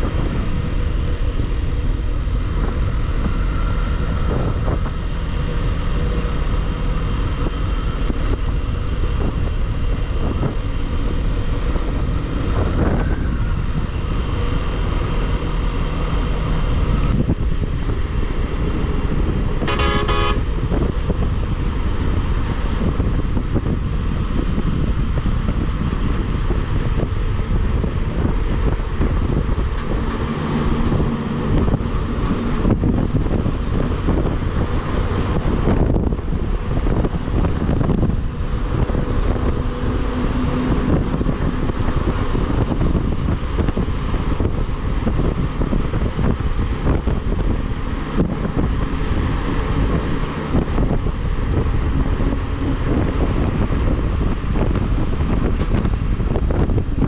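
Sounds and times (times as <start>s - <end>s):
wind on microphone: 0.0s - 57.0s
vehicle horn: 19.6s - 20.7s.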